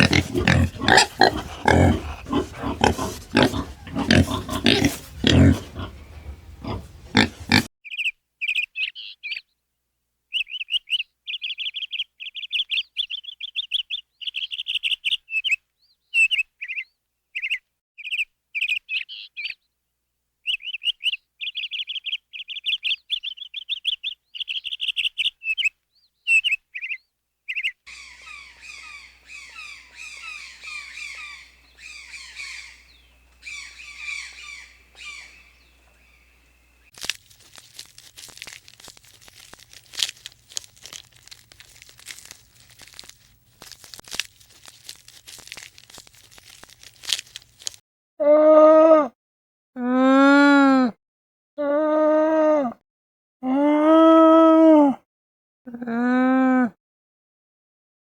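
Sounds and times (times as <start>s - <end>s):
rough low-pitched animal calls: 0.0s - 7.7s.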